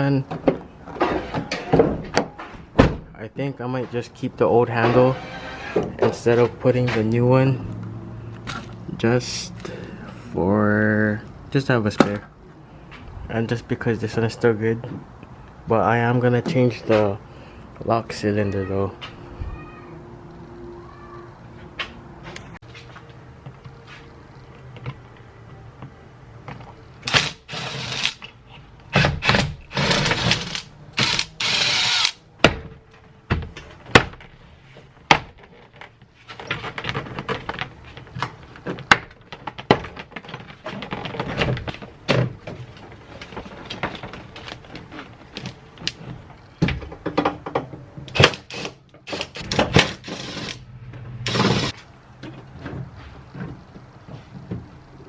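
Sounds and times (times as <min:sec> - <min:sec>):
scraping and rattling hardware: 0:46.8 - 0:51.8.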